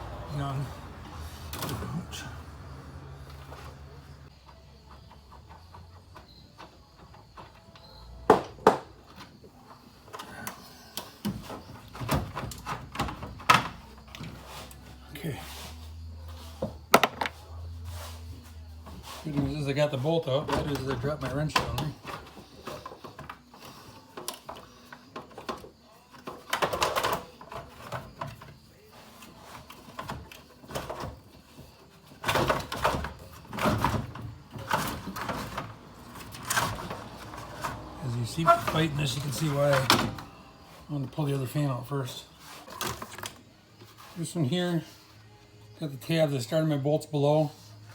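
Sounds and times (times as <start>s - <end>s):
plastic fan scraping and knocking: 26.2s - 40.3s.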